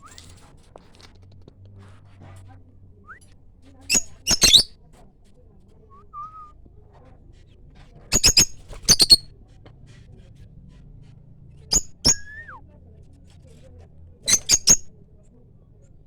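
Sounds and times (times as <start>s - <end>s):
soft whistle: 5.9s - 6.6s, 12.1s - 12.6s.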